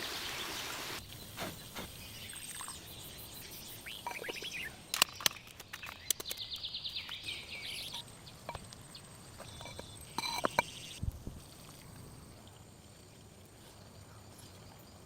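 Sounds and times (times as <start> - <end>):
bird chirping: 1.0 - 11.0.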